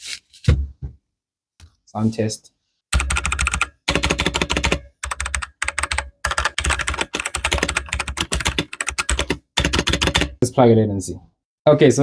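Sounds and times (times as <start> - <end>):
mechanical keyboard typing: 3.0 - 10.4.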